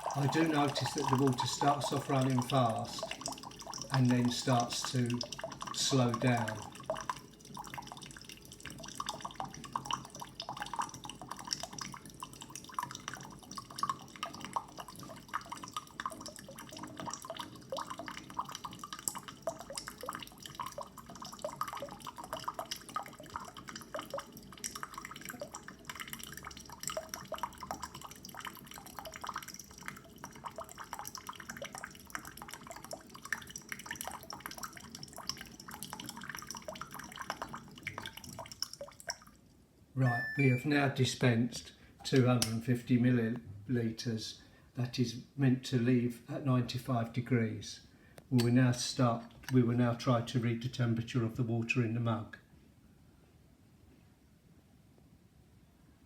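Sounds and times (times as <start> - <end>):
water trickling into a mug: 0.0 - 40.6.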